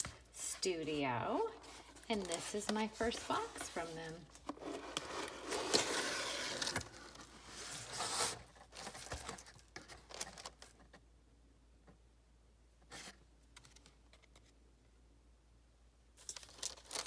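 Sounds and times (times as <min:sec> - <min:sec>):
paper packaging rustling: 0:00.0 - 0:11.0, 0:16.2 - 0:17.0.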